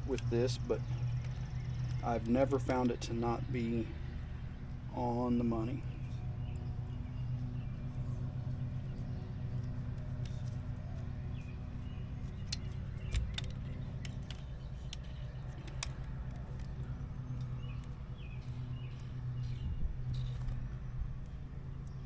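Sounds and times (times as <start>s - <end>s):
low mechanical hum: 0.0s - 22.0s
sharp metallic clicks: 11.4s - 20.6s.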